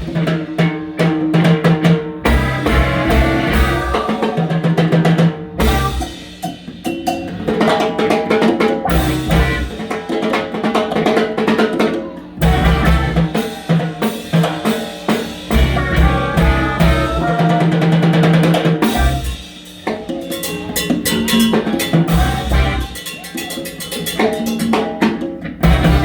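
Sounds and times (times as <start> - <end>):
drums and percussion: 0.0 - 26.0
live salsa band: 0.0 - 26.0
bass line: 2.3 - 4.1, 5.6 - 6.0, 8.9 - 9.7, 12.4 - 13.3, 15.5 - 17.6, 18.9 - 19.4, 22.1 - 23.0, 25.6 - 26.0.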